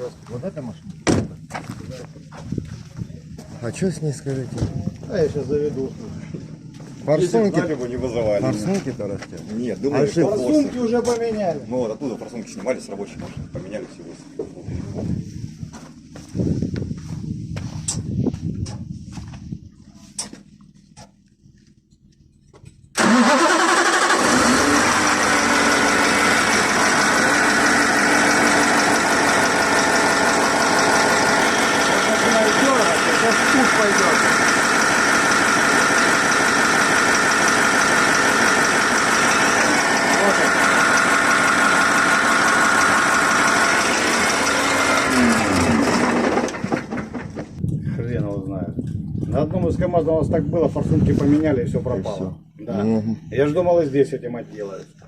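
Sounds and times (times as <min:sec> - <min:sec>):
diesel engine idling: 0:00.0 - 0:17.8, 0:19.2 - 0:47.6
diesel truck engine starting: 0:22.9 - 0:47.6.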